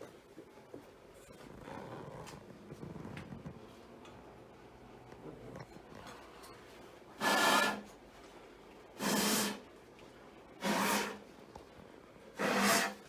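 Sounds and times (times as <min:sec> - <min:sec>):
hand tool rasping on metal: 0:07.2 - 0:07.8, 0:10.6 - 0:11.2, 0:12.4 - 0:13.0.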